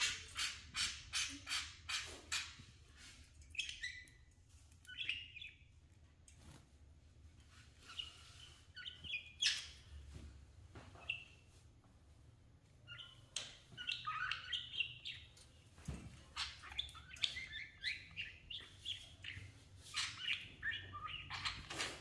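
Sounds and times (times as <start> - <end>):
budgies chirping: 0.0 - 2.7, 3.5 - 5.7, 7.8 - 9.9, 11.0 - 11.4, 12.8 - 22.0.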